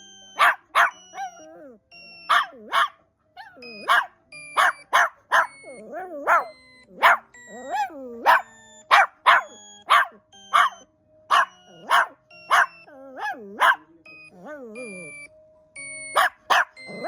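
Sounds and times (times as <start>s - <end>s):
ringing tones changing pitch: 0.0s - 2.8s, 3.4s - 13.4s, 14.0s - 17.0s
puppy barking: 0.3s - 14.8s, 16.0s - 17.0s
puppy whiny grumbles: 5.6s - 6.5s, 7.4s - 8.5s, 12.7s - 15.3s, 16.8s - 17.0s.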